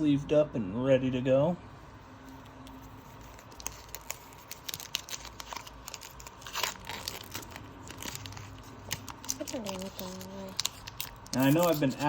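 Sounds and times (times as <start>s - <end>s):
foil wrapper crinkling: 2.4s - 12.0s
foil wrapper ripping: 3.2s - 12.0s.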